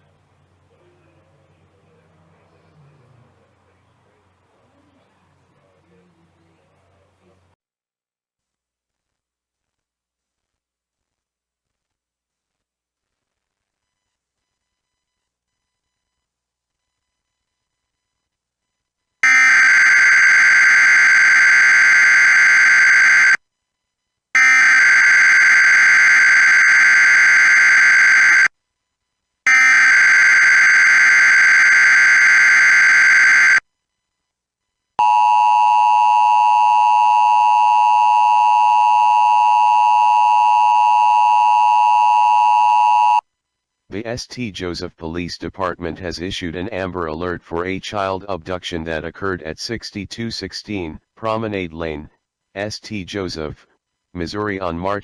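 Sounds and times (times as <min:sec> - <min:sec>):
screeching data bursts: 0:29.5 - 0:33.6.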